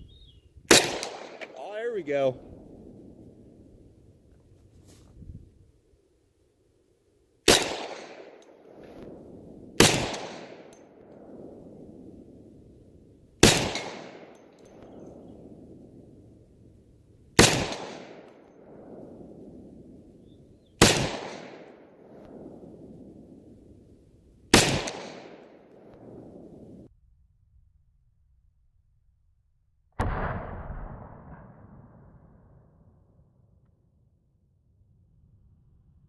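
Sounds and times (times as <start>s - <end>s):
pistol shots with echo: 0.7s - 1.6s, 7.5s - 8.4s, 9.1s - 11.7s, 13.4s - 15.6s, 17.4s - 19.0s, 20.8s - 22.6s, 24.5s - 26.6s, 30.0s - 31.4s.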